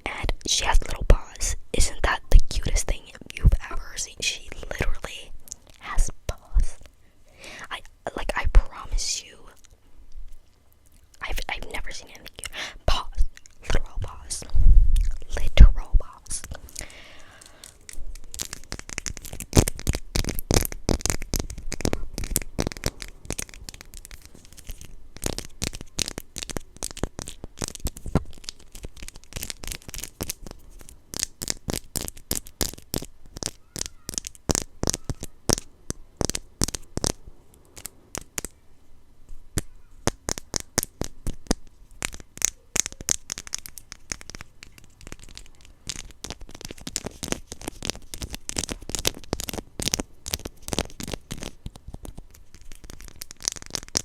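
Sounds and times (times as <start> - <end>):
packaging being torn open: 16.7 - 38.5, 39.6 - 54.0.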